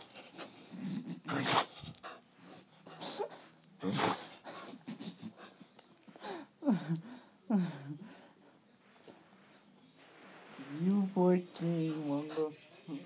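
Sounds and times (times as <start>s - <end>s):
dog sneezing: 1.3s - 1.7s, 3.8s - 4.3s.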